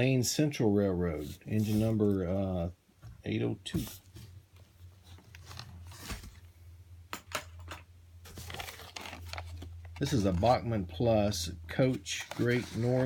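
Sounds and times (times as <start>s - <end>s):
low electrical hum: 0.0s - 13.0s
plastic and cardboard crinkling: 4.9s - 6.5s, 8.2s - 10.7s, 11.7s - 13.0s.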